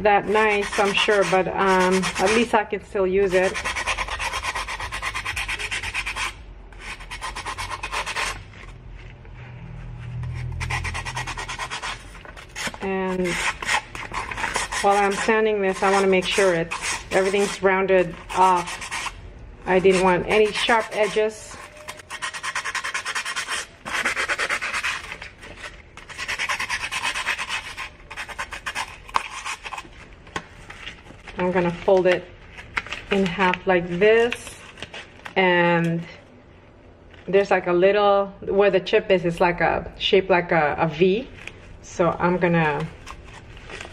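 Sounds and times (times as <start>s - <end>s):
faint low hum: 0.0s - 23.5s
sandpaper rubbing on glass: 0.3s - 2.5s, 3.3s - 8.4s, 10.3s - 29.9s.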